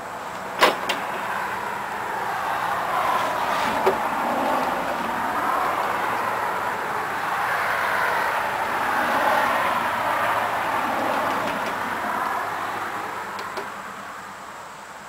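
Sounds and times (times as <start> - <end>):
power saw cutting wood: 3.2 - 5.1.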